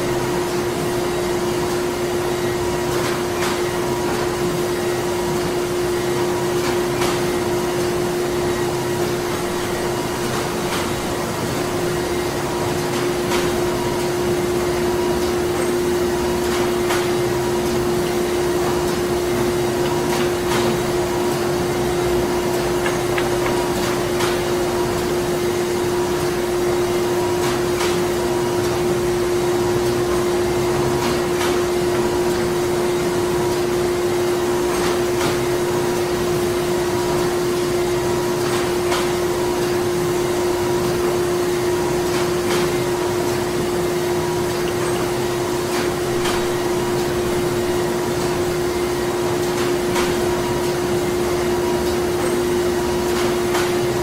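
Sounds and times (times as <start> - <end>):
machinery humming: 4.9 - 30.8
steady machine tone: 11.4 - 27.4.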